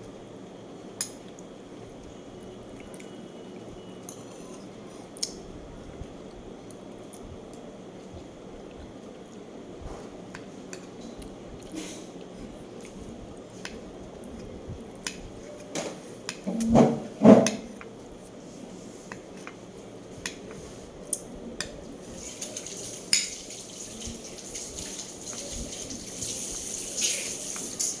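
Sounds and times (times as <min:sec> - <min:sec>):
running water: 0:22.0 - 0:28.0
dishes and cutlery clinking: 0:22.3 - 0:23.6.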